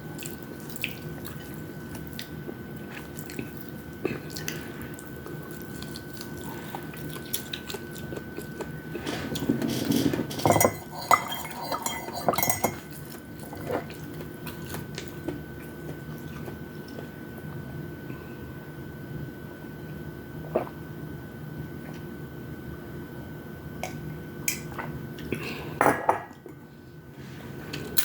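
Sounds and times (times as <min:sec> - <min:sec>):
cutlery clinking on a plate: 0:09.7 - 0:12.8.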